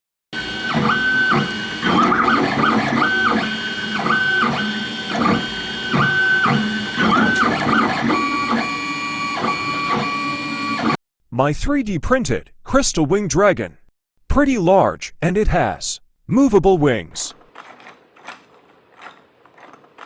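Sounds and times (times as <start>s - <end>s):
steady mechanical whir: 0.4s - 11.0s
stepper motors whining: 0.4s - 11.0s.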